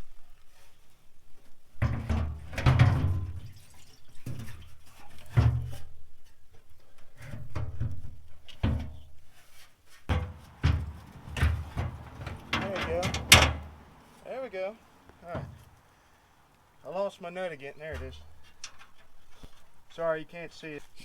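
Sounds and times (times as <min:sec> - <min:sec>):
metal clunks knocks and rattles: 0:01.8 - 0:03.4, 0:10.1 - 0:14.2.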